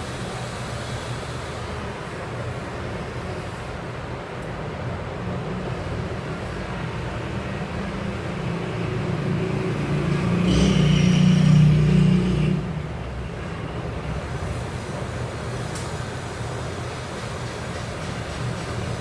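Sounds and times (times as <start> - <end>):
road traffic rumbling: 0.0 - 19.0
vehicle passing: 7.4 - 14.6.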